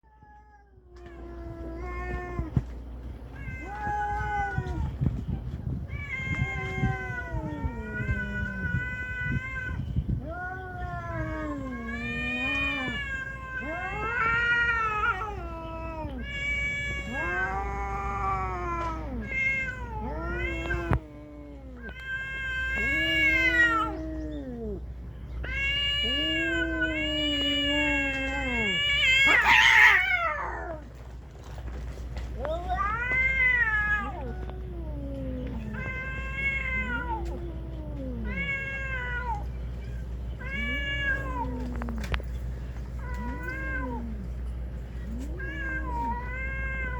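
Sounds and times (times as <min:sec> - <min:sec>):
cats yowling: 0:00.0 - 0:31.1, 0:32.2 - 0:46.9
cat harsh cry: 0:05.9 - 0:24.8, 0:25.4 - 0:30.8, 0:32.7 - 0:39.4.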